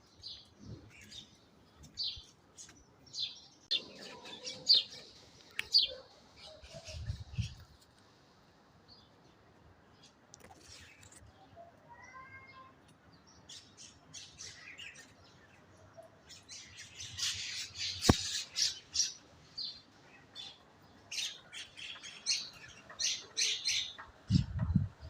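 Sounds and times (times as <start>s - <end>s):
birds chirping: 0.0s - 7.9s.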